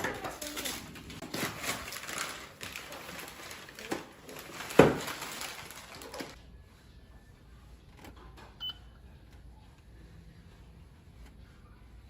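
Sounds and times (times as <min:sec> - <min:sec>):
gift packaging rustling: 0:00.0 - 0:06.4.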